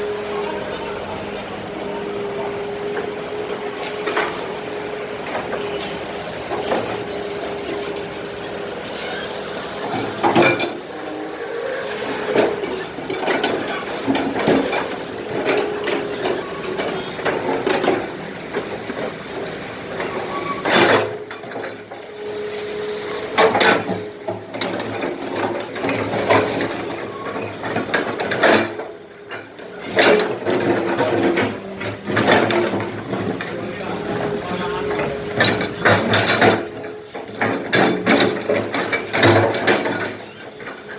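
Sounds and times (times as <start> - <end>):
excavator engine running: 0.0 - 40.9
bucket clanking on concrete: 23.3 - 40.9.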